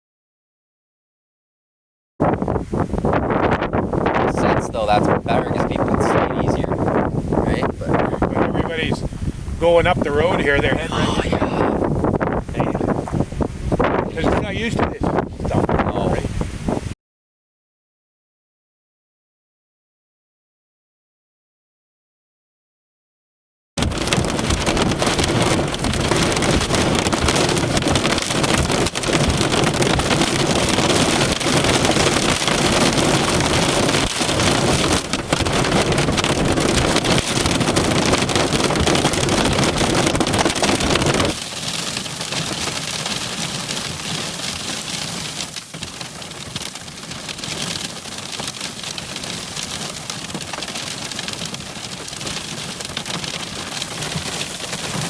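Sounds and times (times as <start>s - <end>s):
wind: 2.2s - 17.0s, 23.8s - 55.0s
heavy rain: 23.8s - 55.0s.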